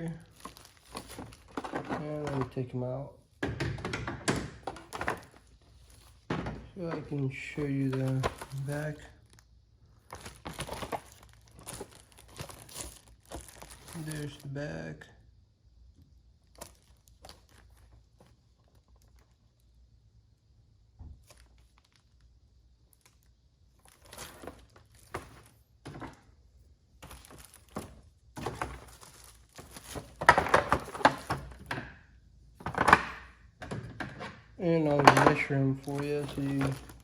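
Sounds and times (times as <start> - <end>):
plastic packaging crinkling: 0.1 - 2.7, 7.1 - 14.5, 16.4 - 19.6, 21.2 - 25.6, 27.0 - 31.7, 34.8 - 37.0
plastic tools clicking and knocking: 29.6 - 37.0.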